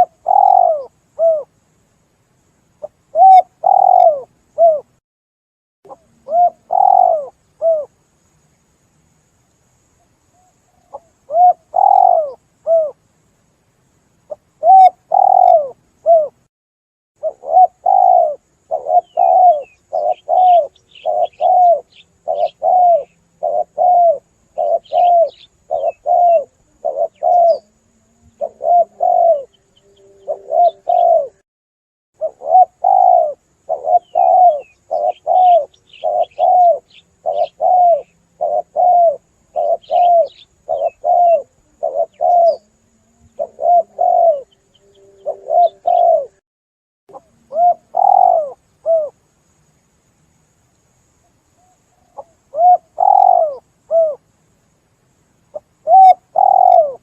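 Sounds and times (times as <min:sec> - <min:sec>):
doves cooing: 0:00.0 - 0:01.5, 0:02.8 - 0:04.9, 0:05.9 - 0:07.9, 0:10.7 - 0:13.0, 0:14.3 - 0:16.4, 0:17.2 - 0:31.4, 0:32.2 - 0:46.4, 0:47.1 - 0:49.1, 0:51.6 - 0:54.2, 0:55.5 - 0:57.0
small birds chirping: 0:00.0 - 0:01.5, 0:02.8 - 0:04.9, 0:05.9 - 0:07.9, 0:09.9 - 0:13.5, 0:14.2 - 0:16.4, 0:17.2 - 0:31.4, 0:32.2 - 0:46.4, 0:47.1 - 0:49.1, 0:50.7 - 0:54.2, 0:55.5 - 0:57.0.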